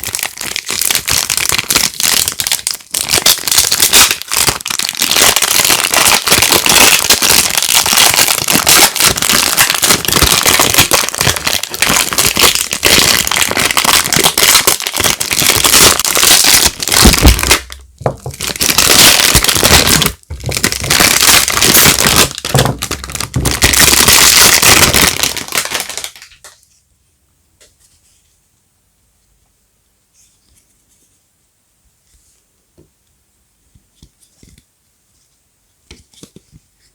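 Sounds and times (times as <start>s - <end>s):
wrapper crinkling and crackling: 0.0s - 26.6s.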